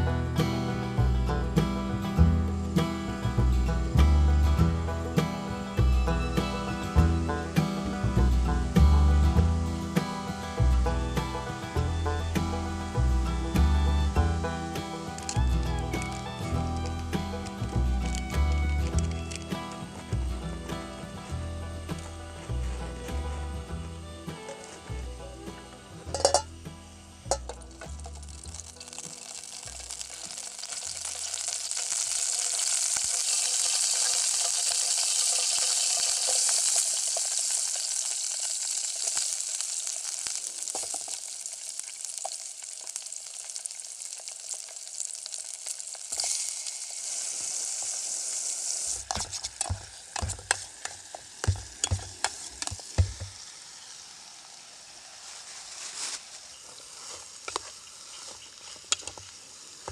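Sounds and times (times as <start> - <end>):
food sizzling in a pan: 0.0 - 59.9
sharp clicks and knocks: 49.0 - 53.4.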